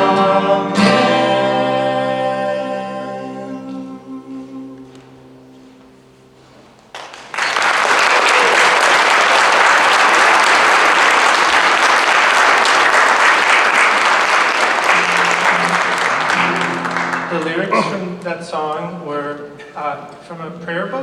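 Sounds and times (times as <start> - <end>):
audience applauding: 6.9 - 18.0.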